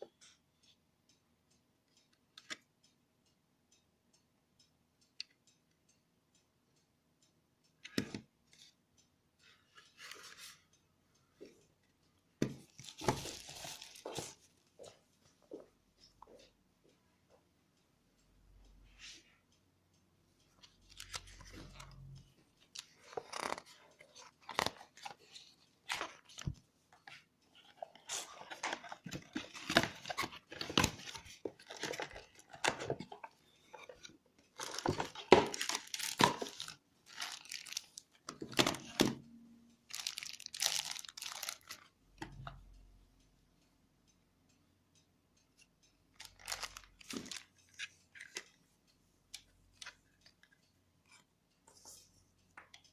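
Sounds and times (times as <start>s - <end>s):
plastic and paper crinkling: 12.6s - 14.5s, 22.7s - 39.1s, 39.9s - 41.9s, 46.2s - 48.5s.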